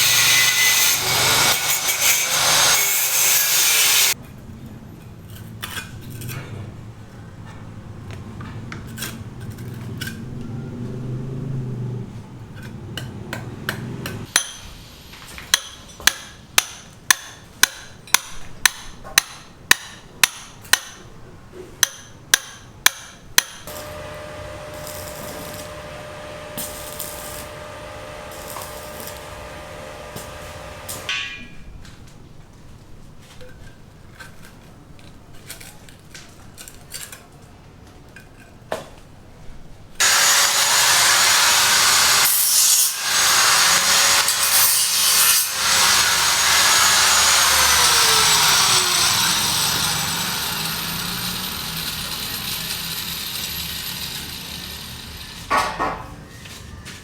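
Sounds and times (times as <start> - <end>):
hammer striking: 13.0 - 14.8, 15.4 - 21.1, 21.8 - 31.7
steady machine hum: 23.7 - 31.1.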